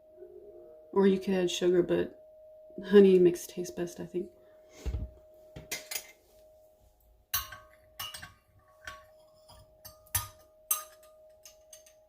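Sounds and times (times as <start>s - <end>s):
faint steady hum: 0.0s - 12.0s
metal spoon clinking on cup: 5.7s - 6.2s, 7.3s - 12.0s.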